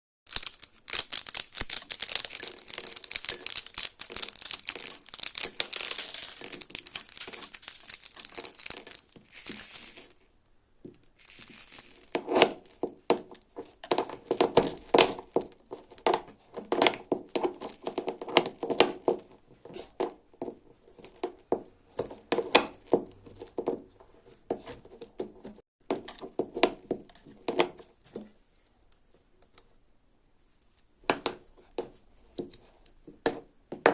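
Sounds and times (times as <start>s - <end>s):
wrappers crinkling and tearing: 0.3s - 10.2s.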